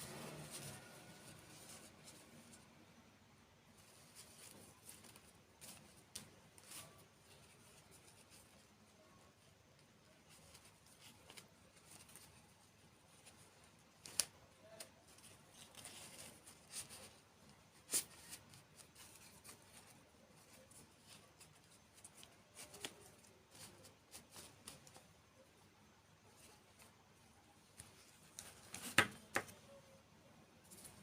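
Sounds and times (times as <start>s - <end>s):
crinkly handling noises: 0.0s - 31.0s.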